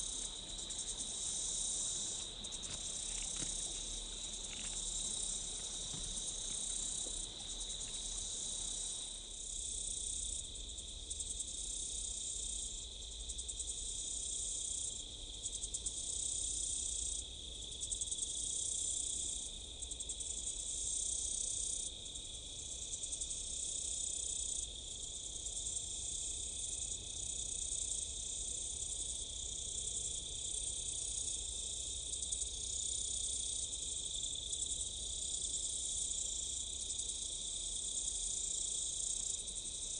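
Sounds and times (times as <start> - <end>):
insects chirring: 0.0 - 10.9.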